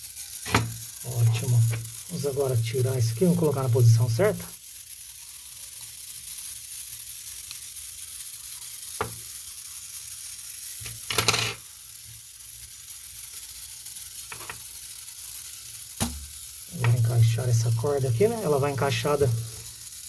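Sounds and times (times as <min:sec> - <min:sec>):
steady background hiss: 0:00.0 - 0:04.7, 0:14.2 - 0:20.0.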